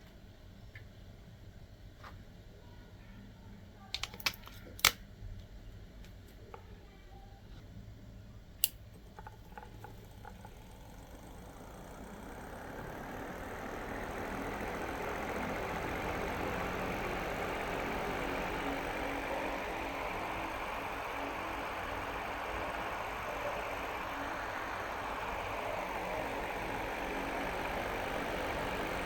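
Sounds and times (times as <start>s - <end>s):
small fan motor whirring: 8.6s - 29.0s.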